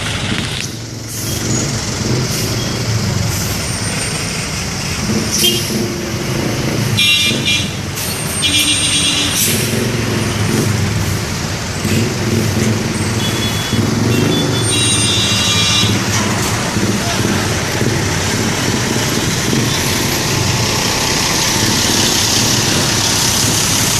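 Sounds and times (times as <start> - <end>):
bus engine rumble: 0.0 - 23.9
multi-tone bus horn: 5.2 - 6.0, 6.9 - 10.6, 13.2 - 17.6
voices: 13.2 - 23.9.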